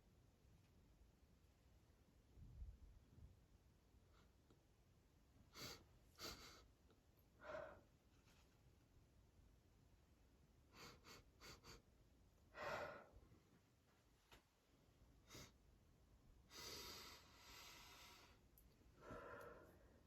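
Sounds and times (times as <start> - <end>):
person breathing: 7.4 - 7.9, 12.5 - 13.3, 16.5 - 20.0.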